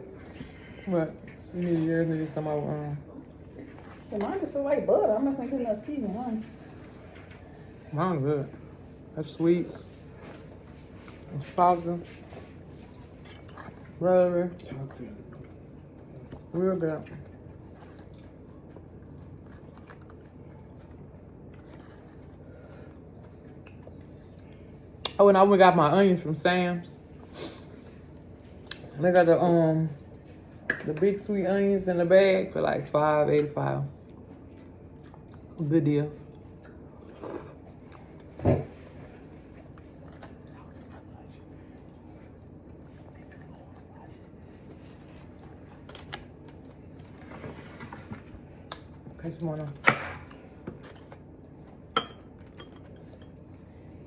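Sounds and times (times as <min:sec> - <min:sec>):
person chewing food: 0:08.6 - 0:25.2, 0:33.9 - 0:35.6, 0:36.2 - 0:47.3.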